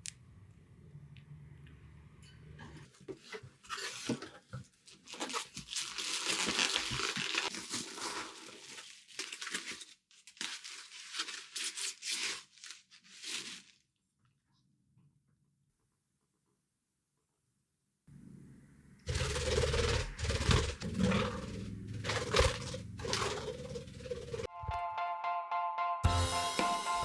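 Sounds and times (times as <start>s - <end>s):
crinkly material tearing: 4.8s - 13.9s.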